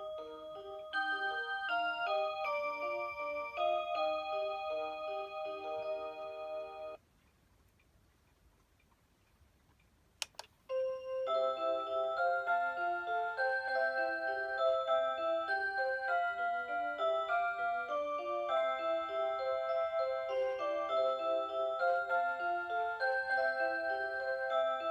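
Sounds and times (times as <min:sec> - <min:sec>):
electronic alarm clock melody: 0:00.0 - 0:07.0, 0:10.7 - 0:24.9
sharp click: 0:09.8 - 0:10.6.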